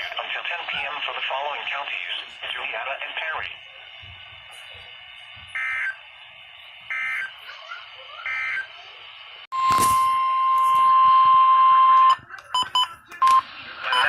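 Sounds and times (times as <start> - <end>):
radio hiss: 0.0 - 10.2, 13.0 - 14.0
steady warning alarm tone: 5.6 - 6.0, 6.9 - 7.3, 8.2 - 8.7, 9.6 - 14.0.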